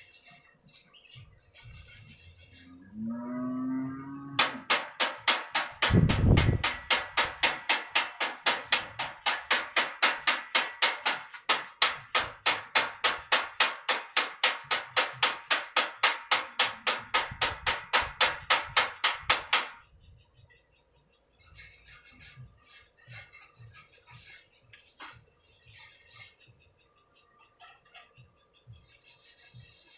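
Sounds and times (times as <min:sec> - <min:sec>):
faint scraping: 0:00.0 - 0:03.2.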